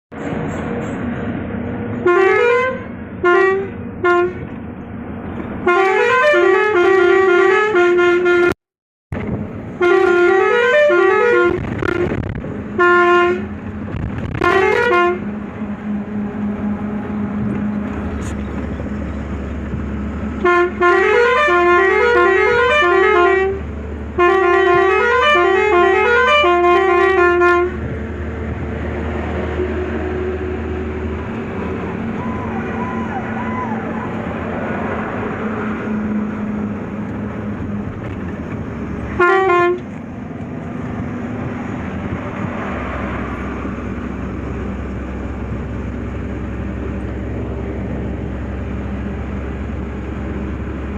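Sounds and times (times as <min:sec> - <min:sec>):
road and engine noise: 0:00.0 - 0:50.9
musical truck horns: 0:02.0 - 0:04.5, 0:05.6 - 0:08.6, 0:09.7 - 0:17.9, 0:20.2 - 0:28.0, 0:39.1 - 0:39.9.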